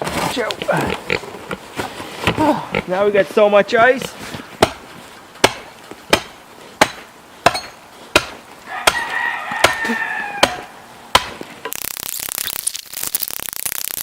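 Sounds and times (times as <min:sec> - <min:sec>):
dense crackling rustle: 0:00.0 - 0:08.7, 0:11.4 - 0:14.0
rooster crowing: 0:08.6 - 0:10.9.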